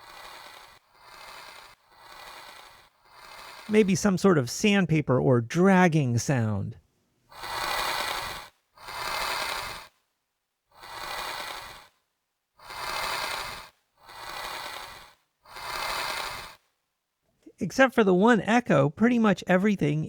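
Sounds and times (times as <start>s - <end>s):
scraping strokes: 0.0s - 3.8s.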